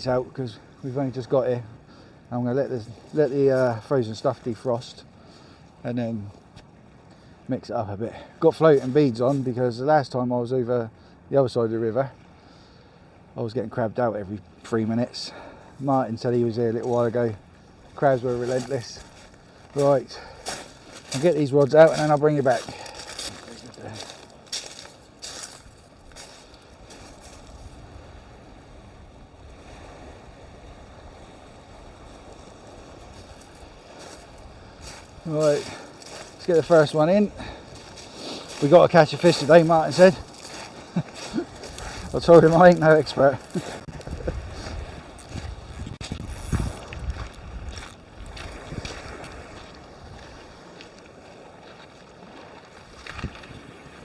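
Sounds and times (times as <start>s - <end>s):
water washing on shore: 0.0s - 54.0s
wind rumbling on microphone: 21.9s - 50.8s, 52.8s - 54.0s.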